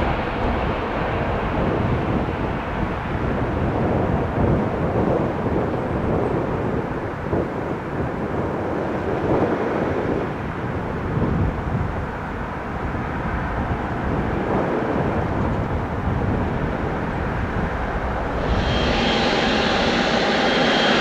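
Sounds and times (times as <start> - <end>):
jet engines rumbling: 18.1 - 21.0.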